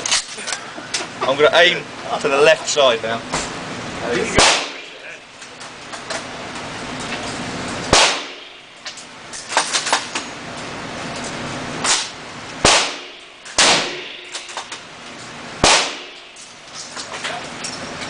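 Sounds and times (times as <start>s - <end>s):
rifle gunshots: 4.4s - 5.0s, 7.9s - 8.6s, 11.9s - 14.4s, 15.6s - 16.3s.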